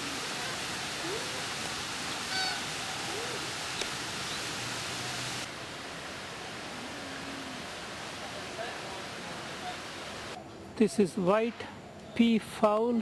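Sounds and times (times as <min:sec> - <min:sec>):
rushing hiss: 0:00.0 - 0:10.4
bird calls: 0:02.0 - 0:05.4.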